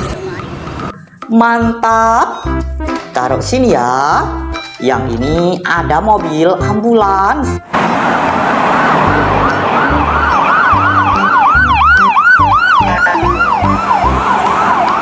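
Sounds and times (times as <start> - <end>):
ambulance siren fast yelp: 7.9 - 15.0.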